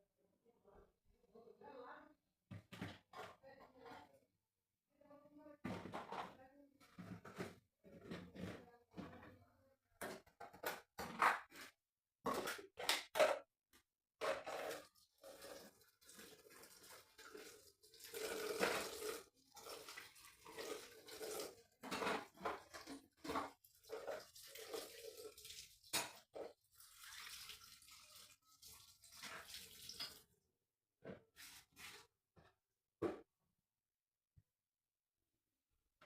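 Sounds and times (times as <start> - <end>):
water splashing and scrubbing: 14.2 - 30.3.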